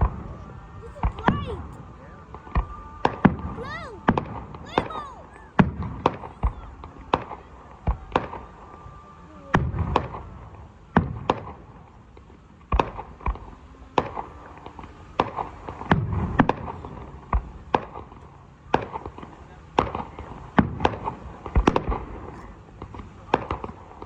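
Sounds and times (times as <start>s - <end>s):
fireworks bangs: 0.0s - 8.6s, 15.2s - 24.0s.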